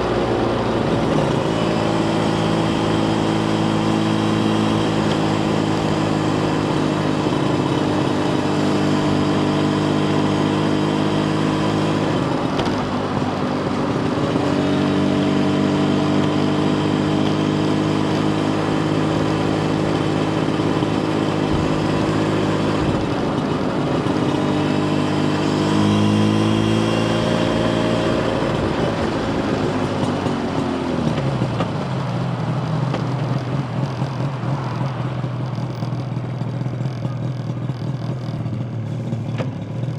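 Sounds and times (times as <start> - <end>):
two-stroke motorcycle engine running: 0.0 - 39.9.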